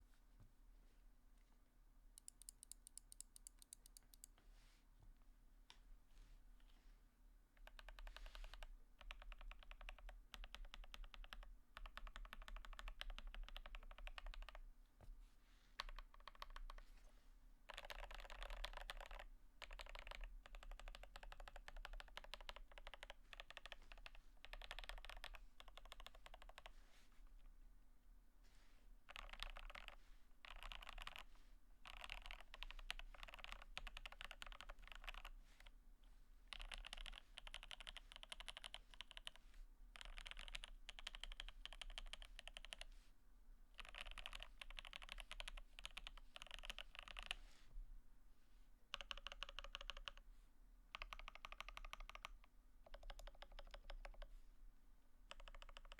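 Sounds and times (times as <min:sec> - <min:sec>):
mechanical keyboard typing: 0:02.2 - 0:04.3, 0:07.6 - 0:14.6, 0:15.8 - 0:16.8, 0:17.7 - 0:26.7, 0:29.1 - 0:31.2, 0:31.8 - 0:35.3, 0:36.5 - 0:39.3, 0:40.0 - 0:42.9, 0:43.8 - 0:47.4, 0:48.9 - 0:50.2, 0:50.9 - 0:54.3, 0:55.3 - 0:55.9.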